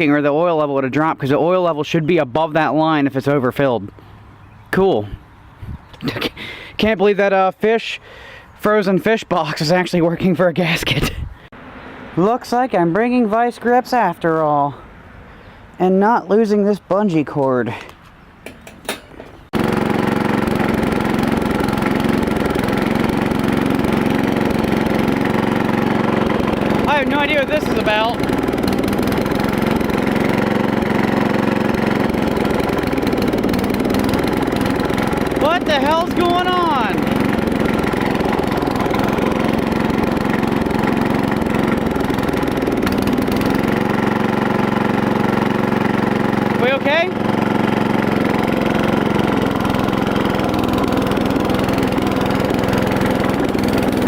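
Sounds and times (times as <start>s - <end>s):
riding mower engine running: 18.4s - 54.0s.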